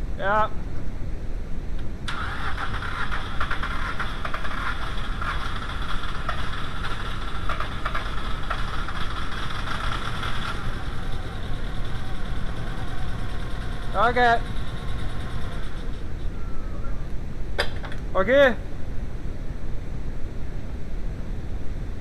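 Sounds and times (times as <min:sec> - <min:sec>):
engine cranking on starter: 0:02.1 - 0:16.4.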